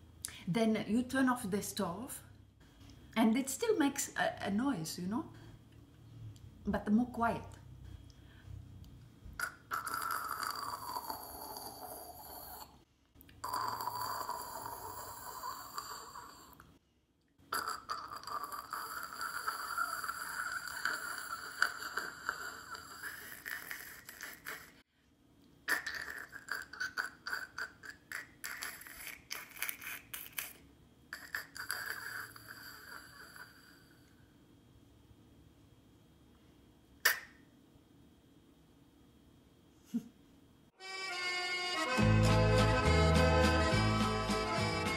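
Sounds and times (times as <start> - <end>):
woman imitating pot sputtering: 9.4 - 16.6, 17.5 - 24.8, 25.7 - 33.9, 37.0 - 37.4.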